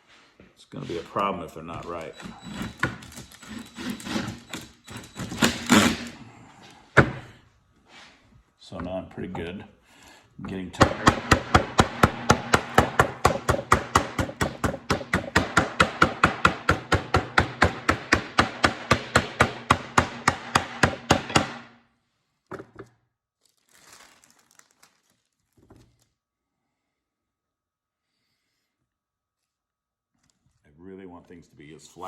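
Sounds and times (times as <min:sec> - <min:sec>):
tapping on wooden wedges: 0:10.4 - 0:21.7.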